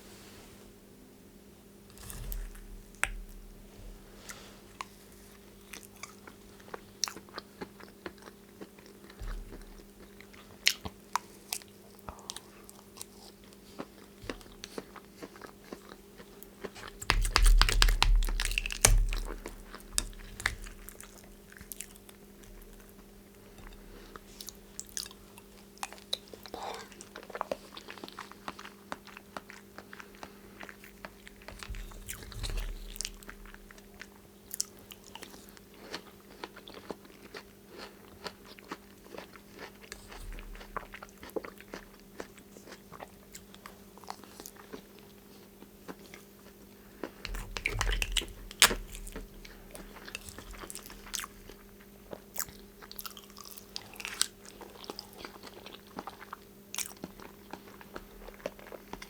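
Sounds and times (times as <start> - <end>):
steady low hum: 0.0 - 7.1, 16.0 - 27.5, 30.2 - 35.3, 46.5 - 58.8
chewing food: 1.9 - 59.0.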